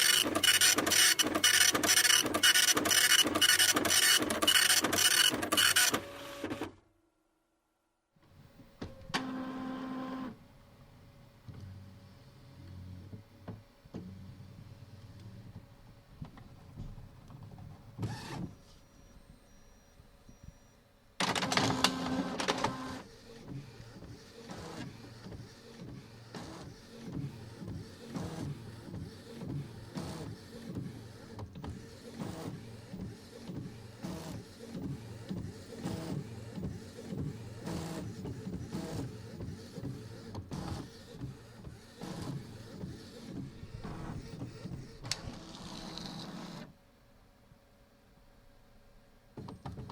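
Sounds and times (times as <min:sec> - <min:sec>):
printer motor whine: 0:00.0 - 0:06.8, 0:09.1 - 0:10.4, 0:18.0 - 0:46.7
printer whirring and clicking: 0:00.0 - 0:06.8, 0:08.8 - 0:10.4, 0:18.0 - 0:18.8, 0:21.2 - 0:46.8.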